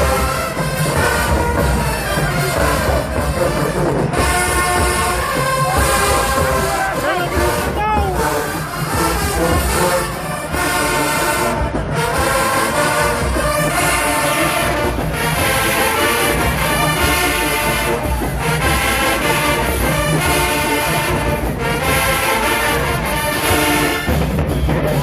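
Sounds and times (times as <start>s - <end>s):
marching band brass playing: 0.0s - 25.0s.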